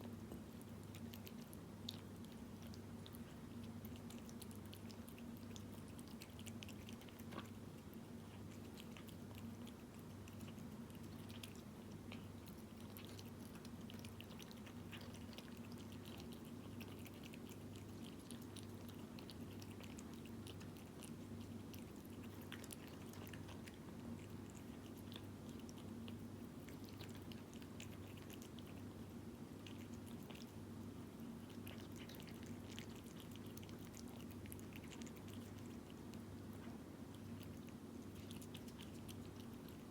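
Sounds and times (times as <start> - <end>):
cat chewing and lapping: 0.0 - 39.9.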